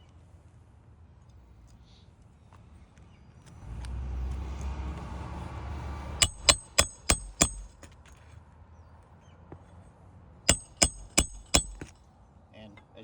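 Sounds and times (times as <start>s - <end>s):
sharp metallic clicks: 6.2s - 7.8s, 10.5s - 12.0s.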